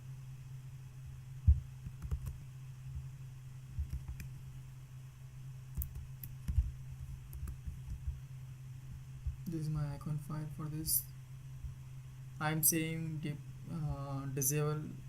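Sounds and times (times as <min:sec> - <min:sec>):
low electrical hum: 0:00.0 - 0:15.0
computer clicks: 0:05.8 - 0:06.7.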